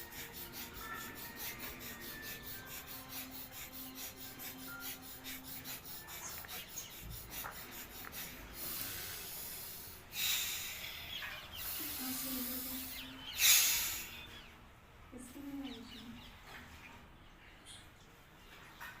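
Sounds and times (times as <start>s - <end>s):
person breathing hard: 0.0s - 12.4s.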